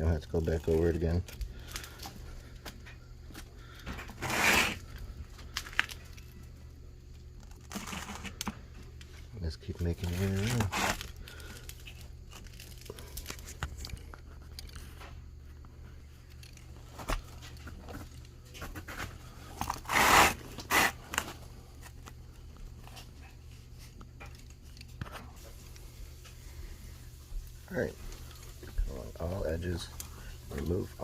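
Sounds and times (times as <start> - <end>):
knife cutting screen mesh: 19.8 - 21.0.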